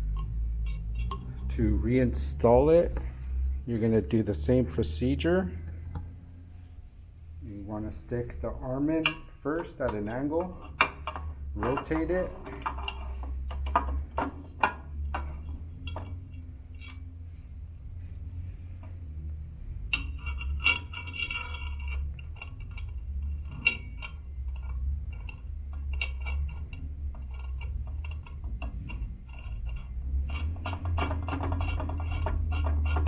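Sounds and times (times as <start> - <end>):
metal parts clicking and clinking: 0.0 - 1.6, 8.9 - 17.2, 19.9 - 33.0
steady low hum: 0.0 - 33.0.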